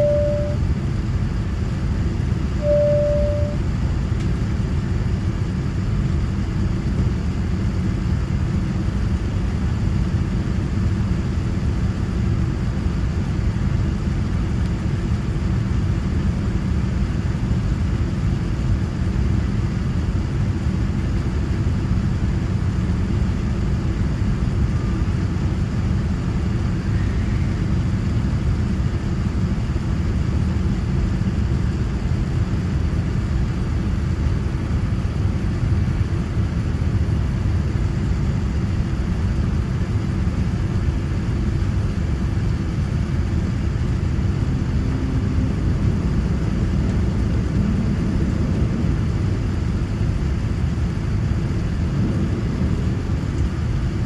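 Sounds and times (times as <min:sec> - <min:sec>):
airliner cabin engine rumble: 0:00.0 - 0:54.0.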